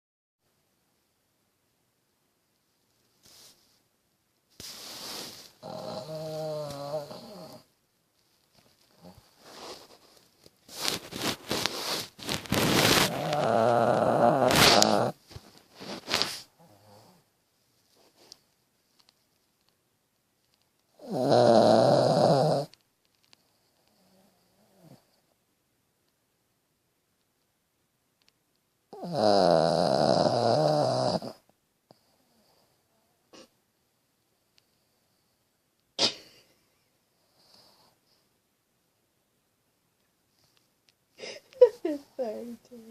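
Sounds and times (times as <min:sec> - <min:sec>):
dog snoring: 0:04.9 - 0:07.7, 0:12.5 - 0:15.2, 0:16.6 - 0:17.3, 0:21.0 - 0:22.8, 0:23.8 - 0:25.2, 0:28.9 - 0:33.5.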